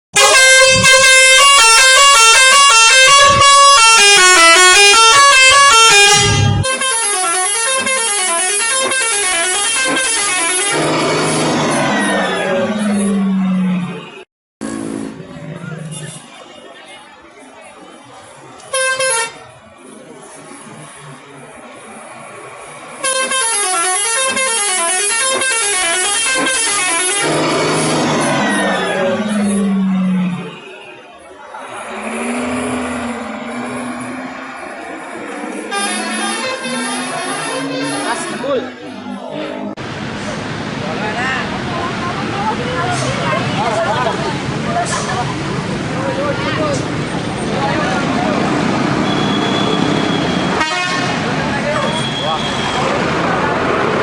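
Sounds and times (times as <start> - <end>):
bus musical horn tune: 0.2 - 14.2, 18.7 - 19.4, 23.0 - 27.9, 35.5 - 38.7, 49.1 - 51.2
loud rushing noise: 6.0 - 6.7, 27.0 - 30.6, 31.4 - 54.0.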